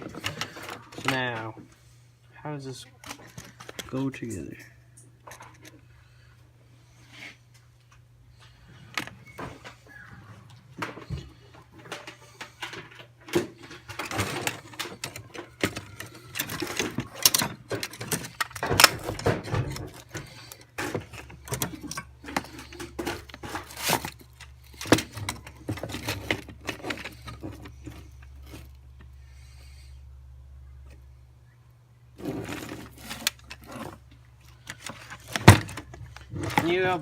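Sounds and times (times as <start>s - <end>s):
small parts clicking and rattling: 10.8s - 29.7s, 32.2s - 37.0s.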